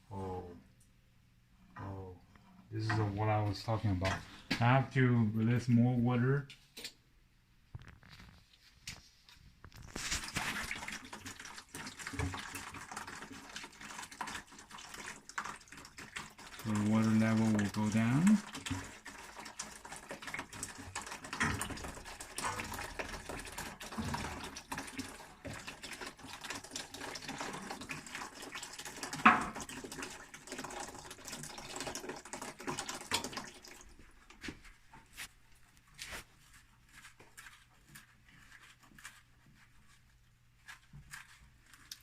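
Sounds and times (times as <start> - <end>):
water running from tank: 9.8 - 35.3.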